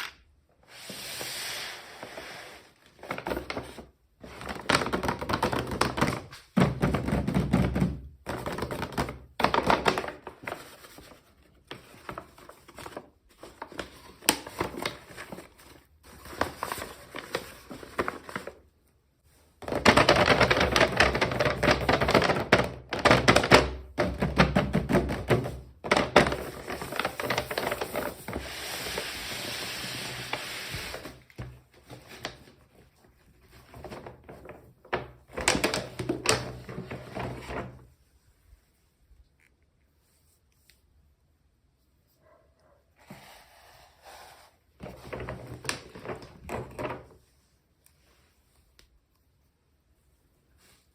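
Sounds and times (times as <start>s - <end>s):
plastic packaging knocks and clicks: 3.0s - 10.5s, 19.6s - 28.3s, 33.7s - 37.7s, 44.8s - 47.1s.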